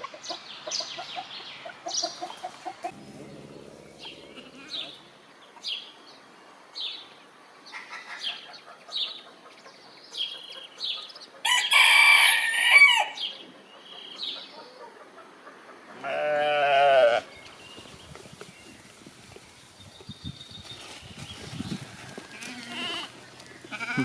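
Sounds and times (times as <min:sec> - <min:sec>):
chickens clucking: 0:00.0 - 0:05.8, 0:12.9 - 0:16.1
rooster crowing: 0:11.4 - 0:13.3
goat bleating: 0:16.0 - 0:17.2, 0:22.3 - 0:24.0.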